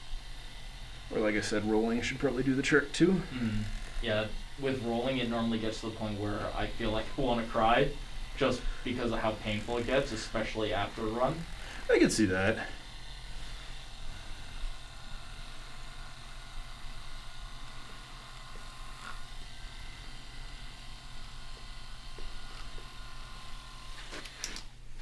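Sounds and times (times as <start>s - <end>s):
massage gun buzzing: 0.0s - 25.0s.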